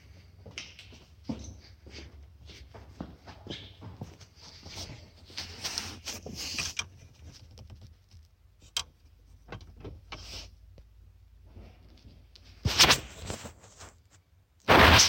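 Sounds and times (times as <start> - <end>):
rustling and scraping: 1.3 - 8.4, 11.4 - 15.0.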